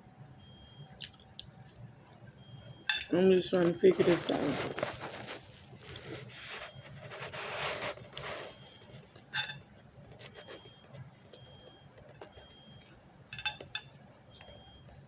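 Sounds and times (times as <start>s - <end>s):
rustling: 3.1s - 9.4s
ringing clink: 13.3s - 13.9s.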